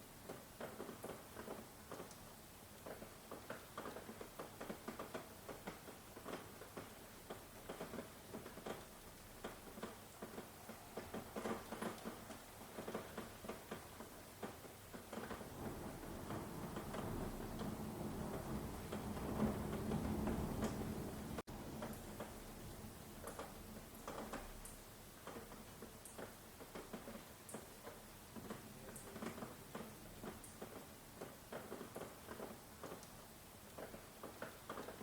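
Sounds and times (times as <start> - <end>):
raindrops pattering on hard surface: 0.0 - 35.0
soft rain hiss: 0.0 - 35.0
low rumble: 15.5 - 21.4.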